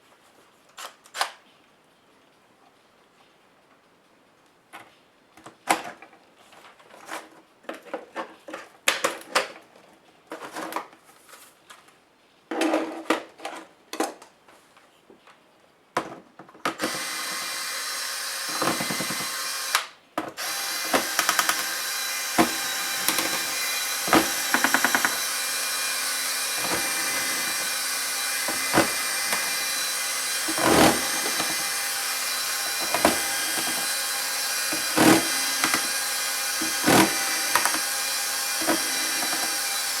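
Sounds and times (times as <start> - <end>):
small power tool running: 16.8 - 40.0.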